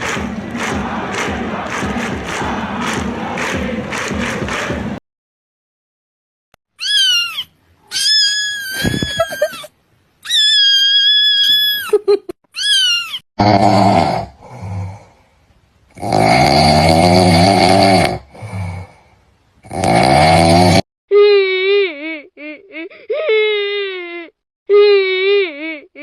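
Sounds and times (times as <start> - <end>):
cat meowing: 6.8 - 9.6, 10.2 - 11.8
cat wailing: 6.8 - 11.8.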